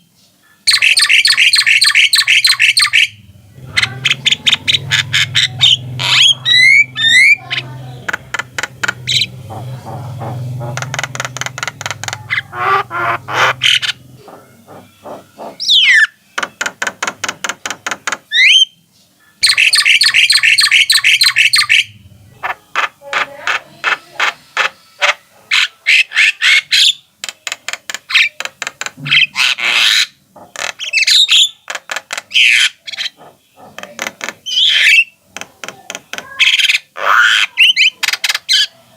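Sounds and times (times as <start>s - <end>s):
birds harsh rattling chatter: 0.4s - 38.8s.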